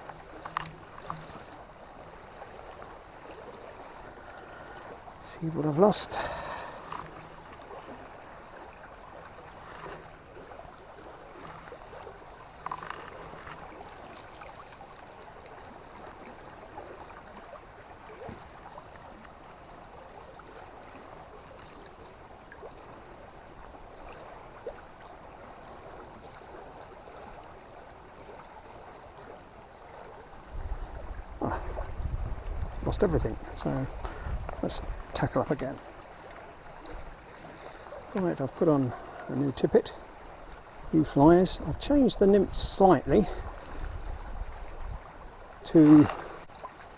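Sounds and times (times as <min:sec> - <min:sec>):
faint clicks: 0:00.0 - 0:01.5, 0:06.8 - 0:07.6, 0:12.4 - 0:14.8
river water flowing: 0:00.0 - 0:46.9.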